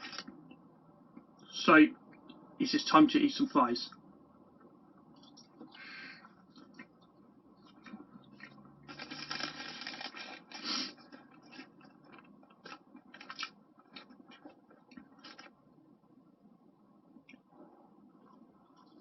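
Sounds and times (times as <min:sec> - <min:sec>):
chewing with crunches: 0:04.6 - 0:15.7, 0:17.2 - 0:19.0
scraping and rustling: 0:07.7 - 0:15.5.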